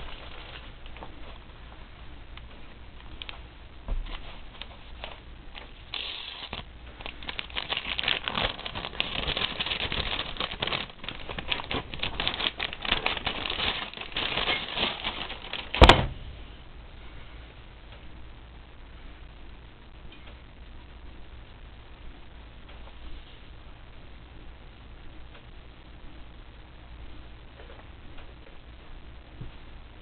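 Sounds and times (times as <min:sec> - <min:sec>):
rapid rustling and clicking: 0:04.1 - 0:15.8.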